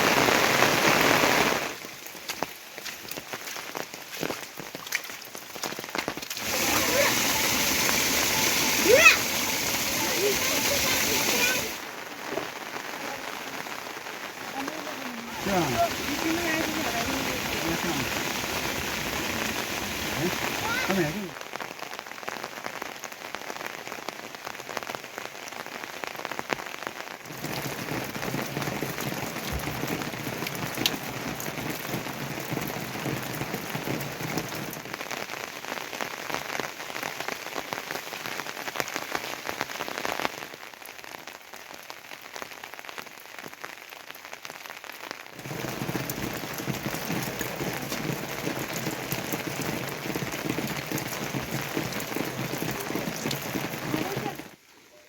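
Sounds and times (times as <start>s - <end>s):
heavy rain falling: 0.0s - 54.8s.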